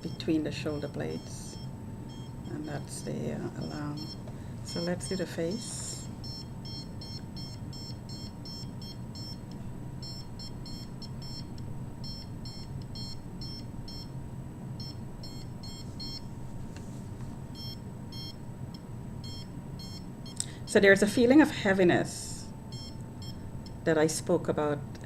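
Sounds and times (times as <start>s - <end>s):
meter alarm beeping: 0.0s - 14.2s, 14.8s - 16.3s, 17.5s - 20.4s, 22.7s - 23.8s.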